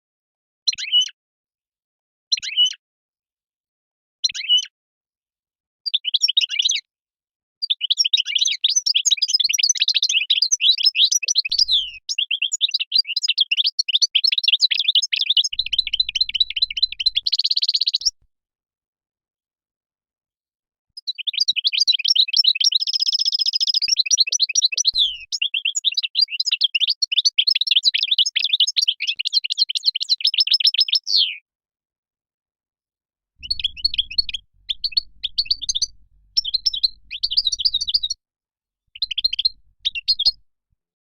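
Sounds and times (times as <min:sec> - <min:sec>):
bird chirping and twittering: 0:08.0 - 0:13.3, 0:14.2 - 0:18.1, 0:21.2 - 0:26.0, 0:33.4 - 0:38.2, 0:39.0 - 0:40.4.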